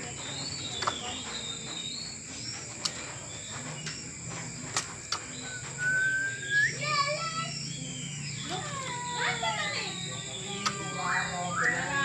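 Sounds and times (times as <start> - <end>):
insect chirring: 0.0 - 12.0
sharp clicks: 10.4 - 11.9.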